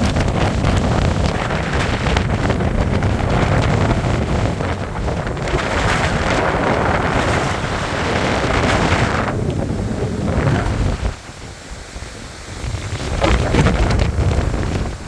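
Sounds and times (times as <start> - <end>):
wind gusting across microphone: 0.0 - 15.0.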